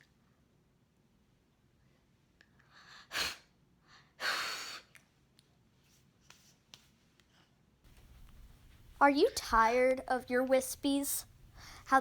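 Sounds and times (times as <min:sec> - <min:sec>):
person breathing out: 0:11.5 - 0:11.9.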